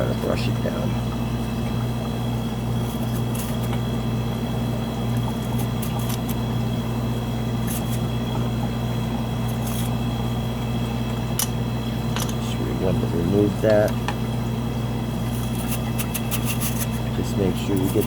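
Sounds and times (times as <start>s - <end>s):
refrigerator low hum: 0.0s - 18.0s
brush scratching coil fins: 2.8s - 3.8s, 5.2s - 6.4s, 7.6s - 8.2s, 9.4s - 10.0s, 15.2s - 18.0s.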